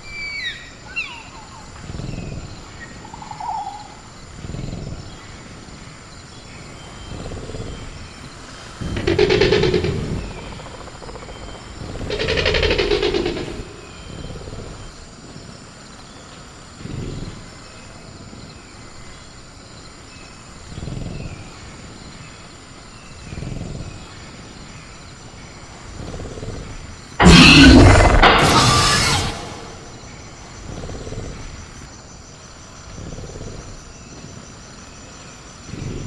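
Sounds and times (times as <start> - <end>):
loud crash: 8.8 - 13.9, 27.2 - 30.0
velociraptor growling: 8.8 - 14.8, 27.2 - 30.1.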